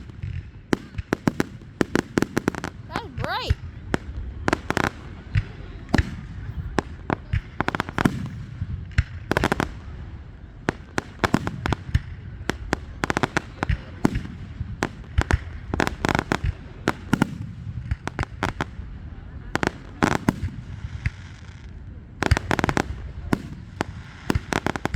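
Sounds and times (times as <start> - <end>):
fireworks bangs and cracks: 0.0 - 24.9.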